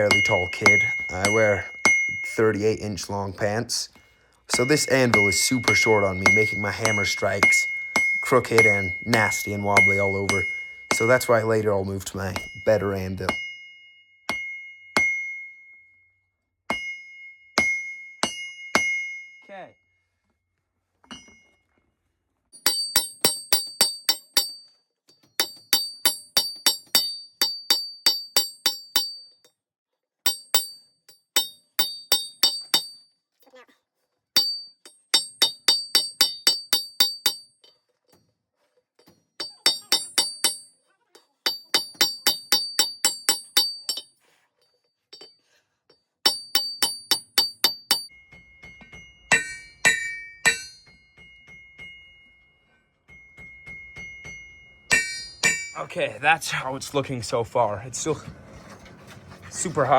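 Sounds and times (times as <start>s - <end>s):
hammer striking steel on anvil: 0.0s - 2.9s, 4.5s - 13.6s, 14.3s - 15.6s, 16.7s - 19.4s, 22.6s - 24.8s, 25.4s - 29.3s, 30.3s - 33.0s, 34.4s - 37.8s, 39.0s - 44.1s, 46.2s - 52.2s, 53.1s - 56.1s.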